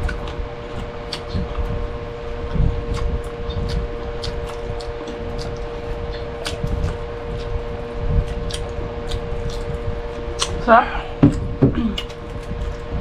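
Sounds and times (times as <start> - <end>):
chewing and mouth sounds: 0.0 - 13.0
steady hum: 0.0 - 13.0.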